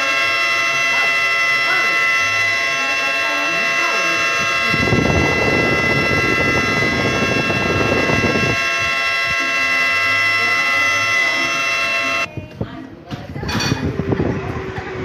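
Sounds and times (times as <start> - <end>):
tornado warning siren: 0.0 - 12.3, 14.0 - 15.0.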